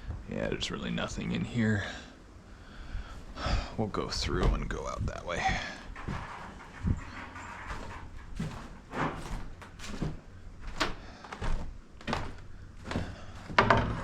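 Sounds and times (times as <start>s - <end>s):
footsteps on wooden floor: 5.4s - 14.0s
door clattering: 13.4s - 14.0s.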